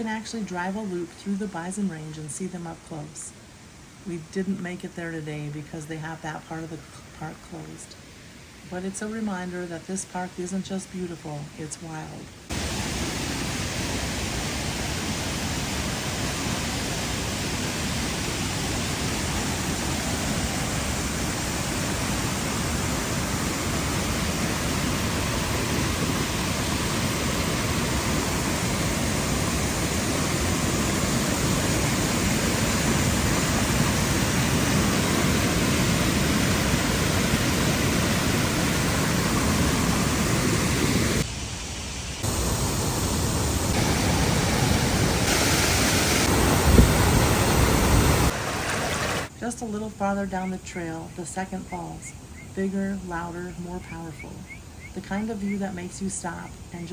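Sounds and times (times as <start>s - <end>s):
waterfall rushing: 12.5s - 41.3s, 42.2s - 49.3s.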